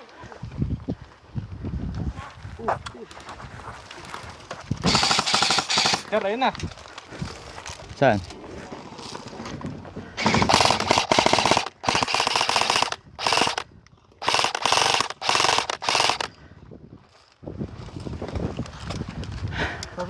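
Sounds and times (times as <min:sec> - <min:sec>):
airsoft rifle full-auto bursts: 0:04.9 - 0:06.4, 0:10.2 - 0:16.3.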